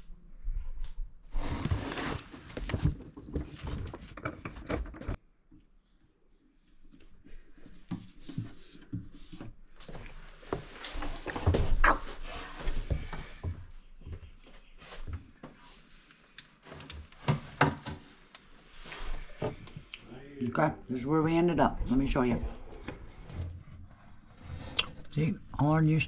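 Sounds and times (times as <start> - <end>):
objects being handled and moved: 0.5 - 6.0, 6.6 - 20.0.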